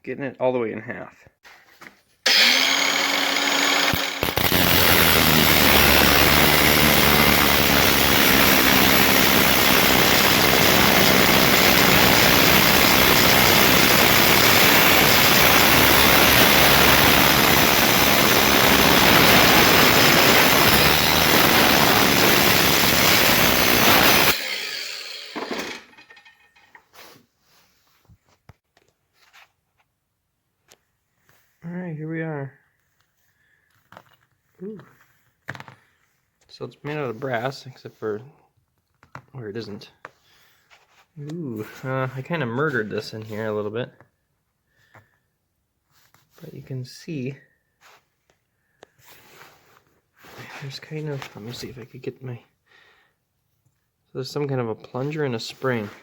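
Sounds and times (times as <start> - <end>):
cutting tool grinding metal: 2.3 - 26.5.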